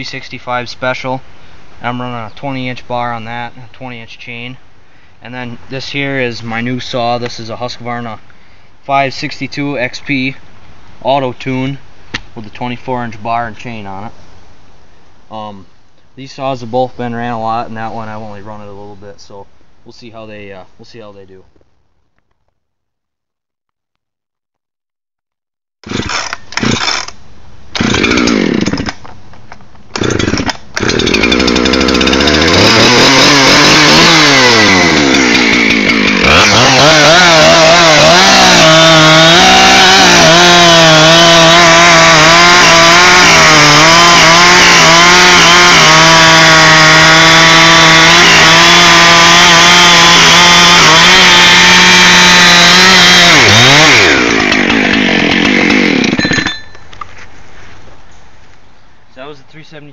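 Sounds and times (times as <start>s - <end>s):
chainsaw engine revving: 25.8s - 29.0s, 29.9s - 56.6s.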